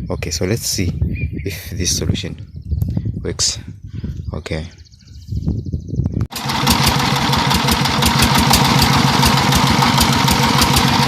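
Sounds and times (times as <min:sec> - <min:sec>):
diesel engine idling: 0:06.3 - 0:11.0.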